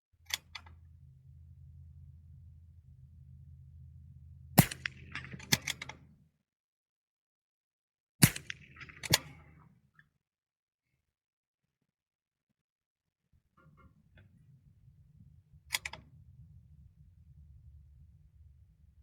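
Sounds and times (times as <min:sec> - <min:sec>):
bullet striking steel target: 0:00.3 - 0:05.9
small clicks: 0:15.6 - 0:16.1.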